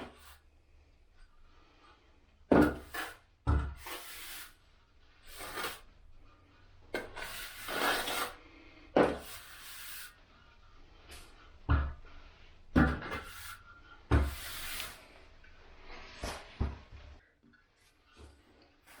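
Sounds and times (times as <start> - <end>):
trowel scraping mortar: 2.6 - 4.6, 5.2 - 5.9, 6.9 - 8.4, 9.0 - 10.1, 12.8 - 15.1.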